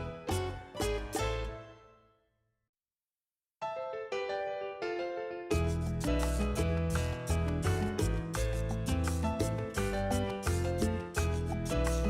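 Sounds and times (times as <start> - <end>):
background music: 0.0 - 2.1, 5.5 - 12.0.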